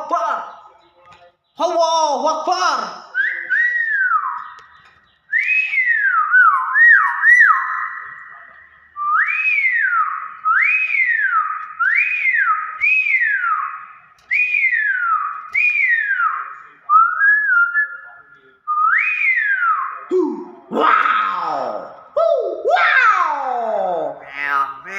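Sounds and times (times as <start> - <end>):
myna bird whistling: 3.1 - 20.1.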